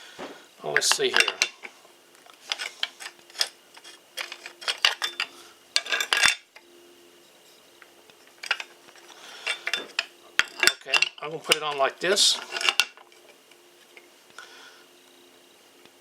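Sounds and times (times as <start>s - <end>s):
metallic clicks of grinder parts: 0.8s - 6.4s, 7.8s - 13.3s.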